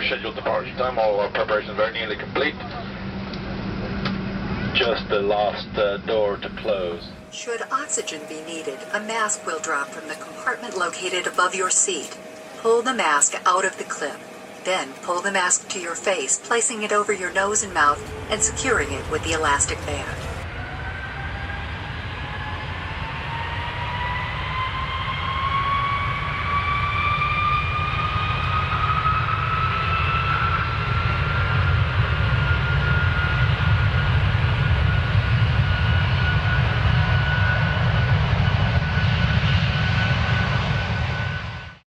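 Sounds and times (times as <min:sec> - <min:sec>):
low rumble of plane rolling: 0:00.0 - 0:41.8
jet engines whining: 0:01.3 - 0:41.8.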